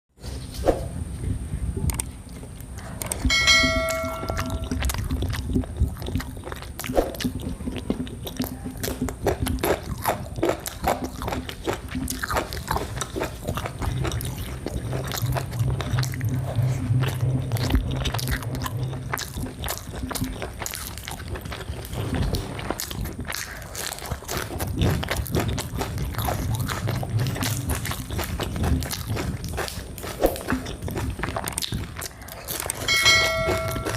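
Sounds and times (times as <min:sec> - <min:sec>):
low hum: 0:00.2 - 0:33.9
biting and chewing: 0:01.3 - 0:33.9
wet mouth clicks and smacks: 0:01.8 - 0:03.4, 0:04.0 - 0:22.0, 0:22.7 - 0:33.9.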